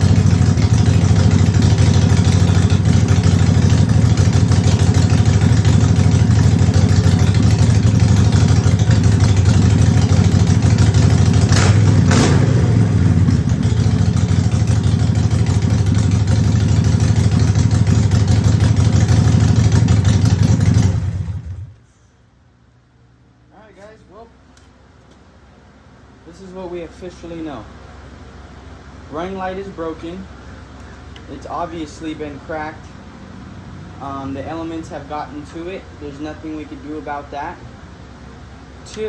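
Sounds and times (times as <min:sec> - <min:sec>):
motorcycle engine idling: 0:00.0 - 0:21.9.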